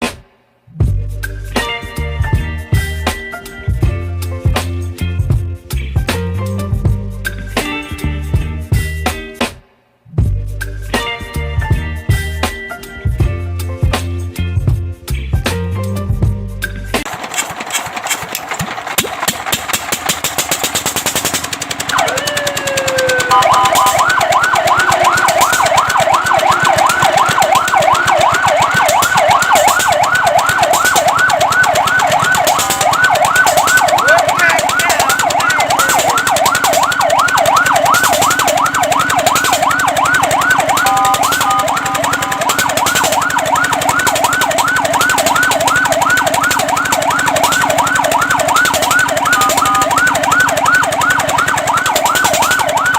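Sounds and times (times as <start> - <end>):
engine humming: 16.8 - 52.9
fire truck siren: 21.2 - 52.9
siren steady tone: 21.8 - 52.9.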